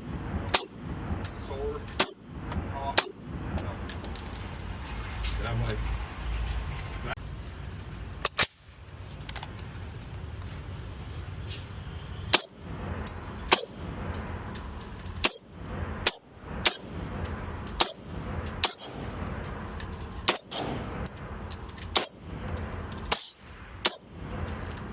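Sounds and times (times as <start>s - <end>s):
high ringing: 16.8s - 20.4s.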